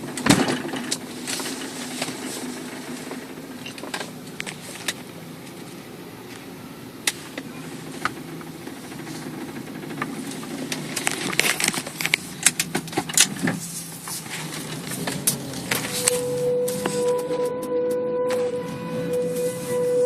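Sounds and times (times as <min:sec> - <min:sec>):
car driving low hum: 0:00.0 - 0:20.0
clicks and rattles: 0:07.1 - 0:16.1.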